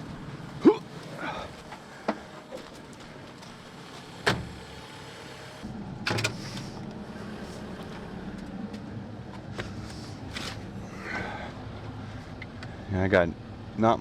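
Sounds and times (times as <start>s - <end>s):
excavator low hum: 0.0s - 14.0s
machine clunks: 4.2s - 4.7s.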